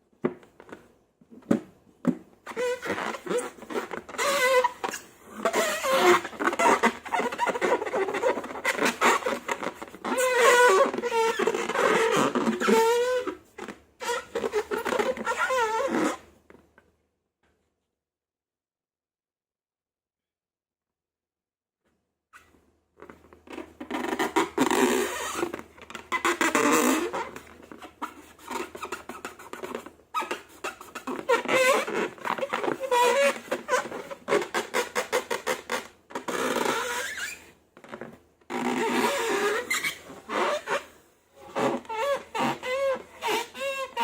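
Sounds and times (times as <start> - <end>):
squeaky air squeezed from balloons: 2.4 - 16.3, 23.5 - 44.0.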